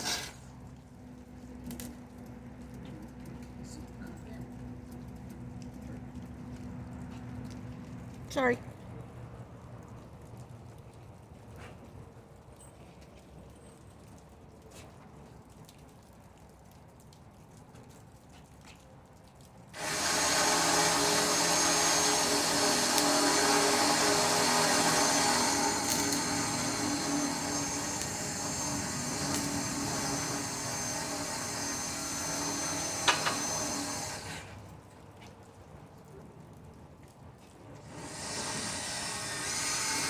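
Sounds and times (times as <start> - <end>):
power tool motor whining: 0.0 - 0.4, 19.8 - 34.6, 37.8 - 40.0.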